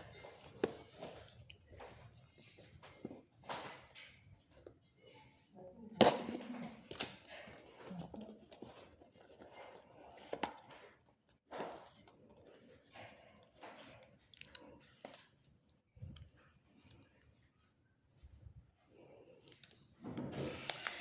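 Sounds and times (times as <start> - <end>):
packaging rustling: 19.4 - 21.0.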